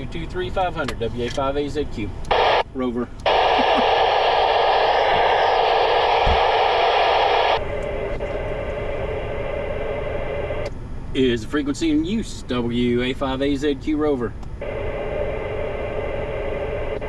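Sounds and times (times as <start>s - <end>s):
radio static hiss: 2.3s - 10.7s, 14.6s - 17.0s.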